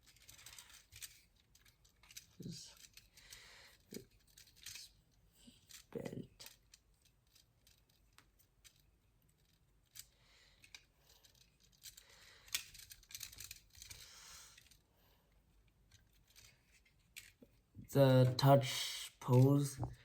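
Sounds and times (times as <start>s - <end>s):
plastic model joints clicking: 0.0s - 8.8s, 9.4s - 14.8s, 15.9s - 17.5s.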